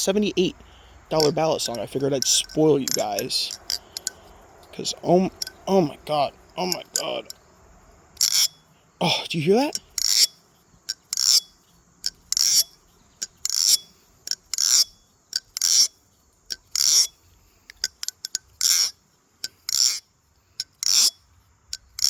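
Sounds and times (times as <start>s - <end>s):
knife handles clicking: 1.1s - 7.4s, 17.7s - 20.0s
butterfly knife blade zinging: 1.2s - 4.2s.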